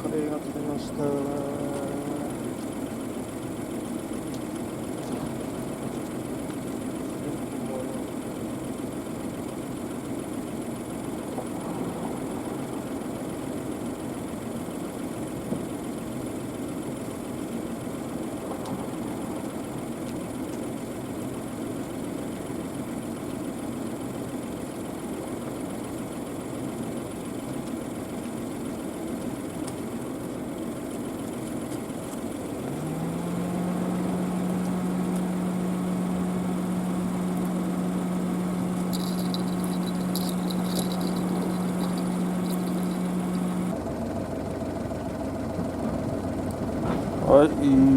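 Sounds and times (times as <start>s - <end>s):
engine idling: 0.0s - 47.9s
loud steady hum: 34.2s - 43.8s.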